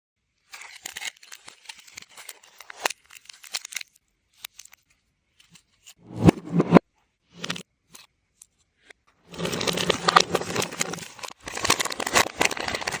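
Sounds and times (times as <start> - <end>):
reversed packaging rustling: 0.4 - 6.5, 9.1 - 13.0.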